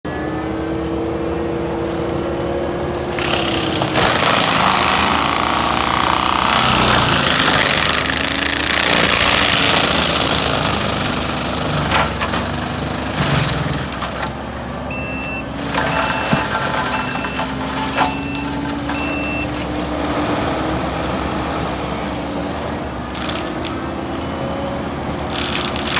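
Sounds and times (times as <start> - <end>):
diesel engine working hard: 0.0 - 25.9
mulcher shredding brush and wood: 0.1 - 25.9
backup alarm beeping: 14.9 - 19.6.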